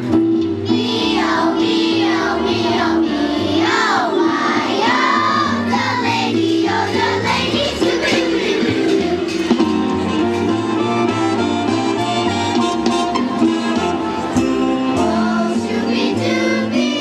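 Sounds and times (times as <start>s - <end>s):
instrumental accompaniment: 0.0s - 17.0s
children's choir singing: 0.6s - 10.5s, 13.7s - 17.0s.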